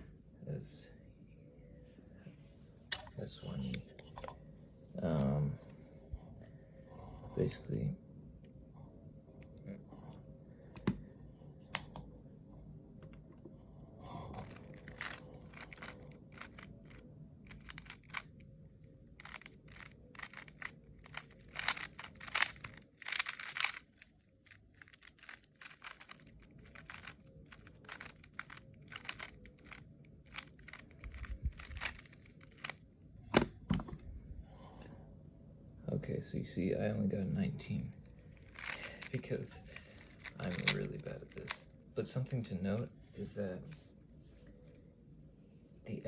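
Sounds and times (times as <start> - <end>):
puzzle cube clicking turns: 14.4 - 18.4, 19.2 - 32.8, 38.4 - 41.7.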